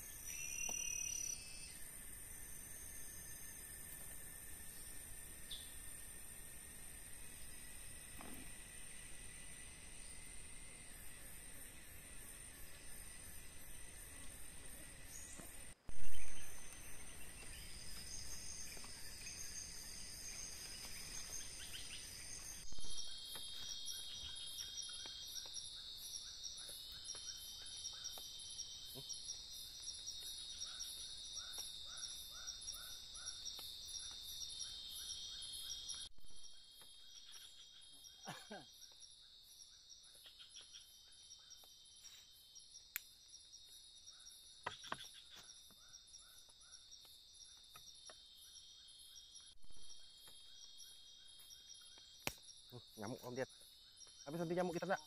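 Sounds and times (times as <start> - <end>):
insect chorus buzzing: 0.0 - 55.0.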